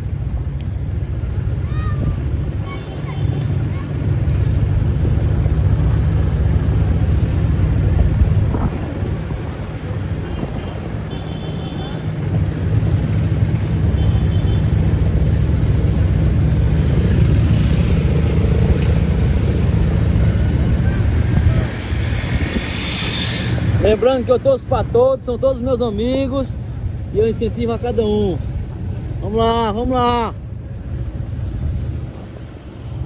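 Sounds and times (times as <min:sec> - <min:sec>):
vehicle engine droning: 0:00.0 - 0:33.0
wind noise: 0:04.1 - 0:14.0, 0:16.0 - 0:25.0.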